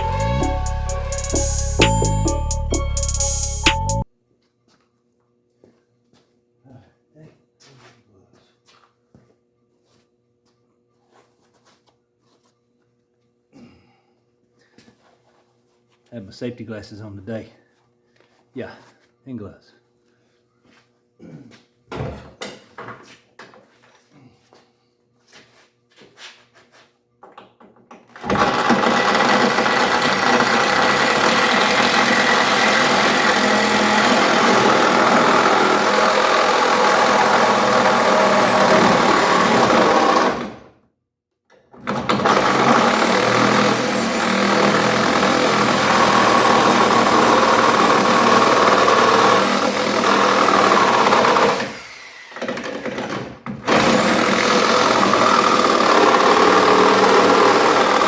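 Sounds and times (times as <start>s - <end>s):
power saw cutting sheet metal: 28.2s - 40.6s, 42.0s - 53.1s, 53.7s - 58.0s.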